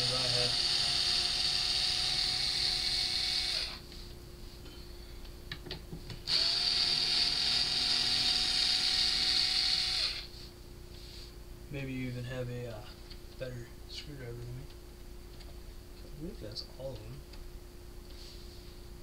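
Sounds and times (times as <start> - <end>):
electric screwdriver motor running: 0.0 - 3.8, 6.3 - 10.3.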